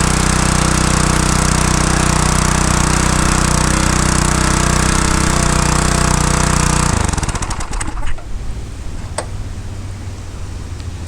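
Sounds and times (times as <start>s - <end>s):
pressure washer engine running: 0.0s - 11.0s.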